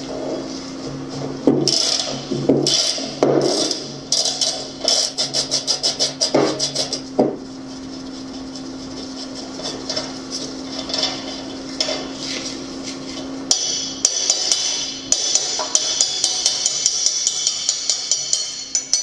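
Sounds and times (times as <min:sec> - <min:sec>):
steady hum: 0:00.0 - 0:19.0
hammer striking metal: 0:13.5 - 0:19.0
music: 0:15.2 - 0:19.0.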